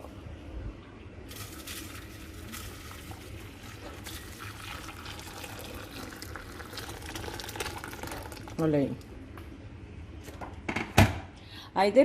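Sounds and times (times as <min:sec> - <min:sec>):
water boiling in a pot: 0:01.3 - 0:09.1.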